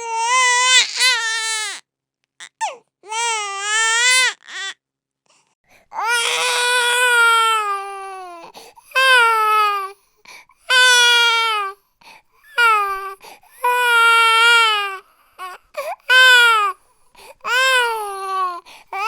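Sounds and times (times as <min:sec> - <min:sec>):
baby crying: 0:00.0 - 0:01.8, 0:02.4 - 0:04.8, 0:05.9 - 0:10.0, 0:10.7 - 0:11.8, 0:12.6 - 0:16.8, 0:17.4 - 0:19.0
baby catching breath: 0:18.6 - 0:19.0.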